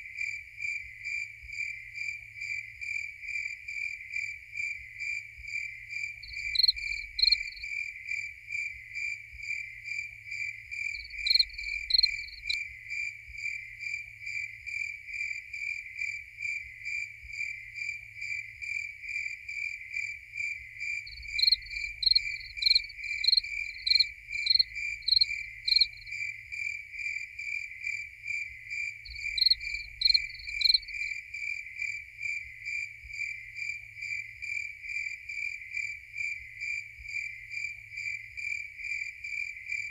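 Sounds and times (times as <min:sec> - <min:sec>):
crickets chirping steadily: 0:00.0 - 0:39.9
loud high-pitched cricket chirps: 0:00.1 - 0:39.9.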